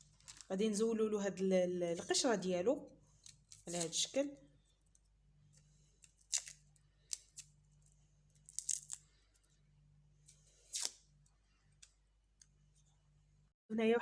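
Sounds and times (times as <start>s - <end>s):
garlic skin crackling: 3.2s - 4.0s, 6.0s - 7.6s, 8.3s - 9.2s, 10.6s - 11.0s.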